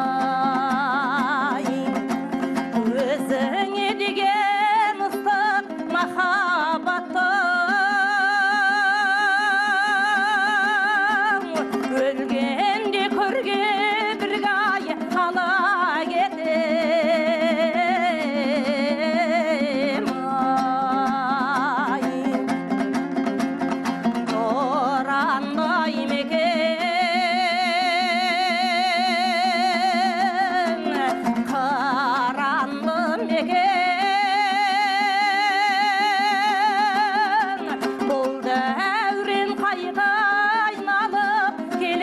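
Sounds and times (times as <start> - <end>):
plucked strings: 0.0 - 42.0.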